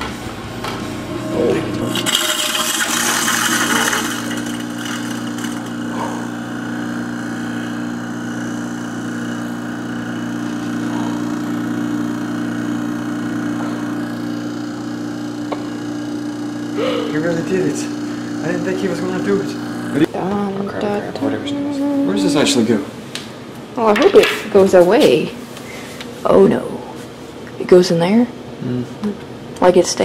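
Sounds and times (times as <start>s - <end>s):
garbage disposal running: 0.0s - 22.9s.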